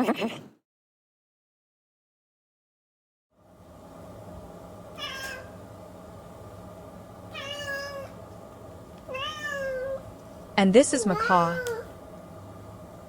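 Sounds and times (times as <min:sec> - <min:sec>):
cat meowing: 0:05.0 - 0:05.6, 0:07.4 - 0:08.2, 0:09.1 - 0:10.0.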